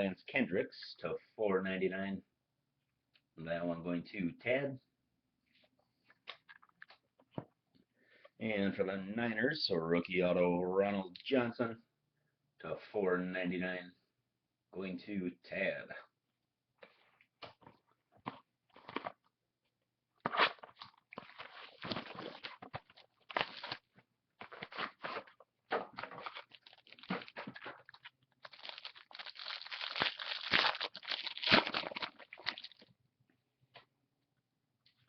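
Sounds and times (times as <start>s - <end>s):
cards and packaging rustling: 17.4s - 19.3s, 20.2s - 32.9s.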